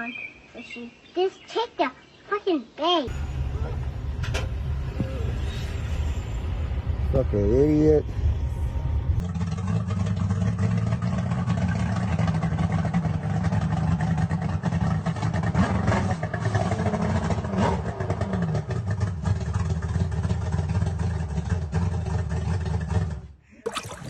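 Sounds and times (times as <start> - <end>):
boat engine droning: 3.1 - 11.8.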